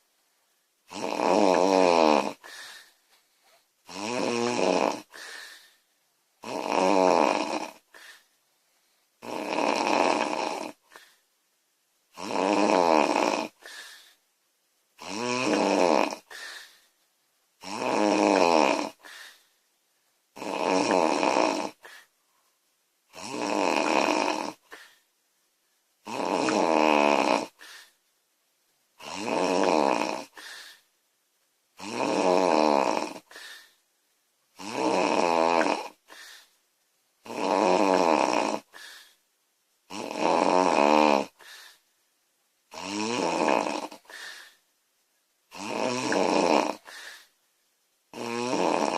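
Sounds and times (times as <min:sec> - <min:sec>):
woman snoring loudly: 0:00.9 - 0:02.8, 0:03.9 - 0:05.5, 0:06.4 - 0:08.1, 0:09.2 - 0:11.0, 0:12.1 - 0:13.8, 0:15.0 - 0:16.6, 0:17.6 - 0:19.3, 0:20.4 - 0:22.1, 0:23.1 - 0:24.9, 0:26.0 - 0:27.9, 0:29.0 - 0:30.8, 0:31.8 - 0:33.7, 0:34.6 - 0:36.2, 0:37.2 - 0:38.9, 0:39.9 - 0:41.5, 0:42.7 - 0:44.4, 0:45.5 - 0:47.3, 0:48.1 - 0:48.9.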